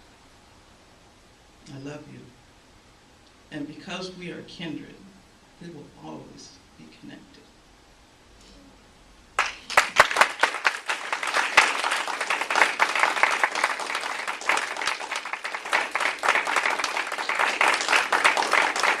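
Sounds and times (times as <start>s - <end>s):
audience applauding: 9.4s - 19.0s.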